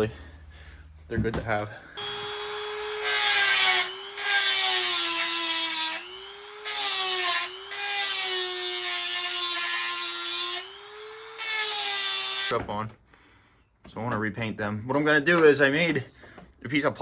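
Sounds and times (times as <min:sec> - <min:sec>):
power tool whine: 0:02.0 - 0:12.5
rasping grinding: 0:02.0 - 0:12.5.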